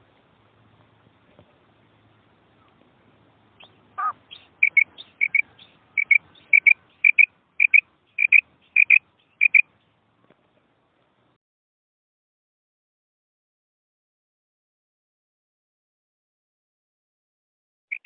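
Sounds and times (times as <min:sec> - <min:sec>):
quail calling: 0:03.6 - 0:09.7.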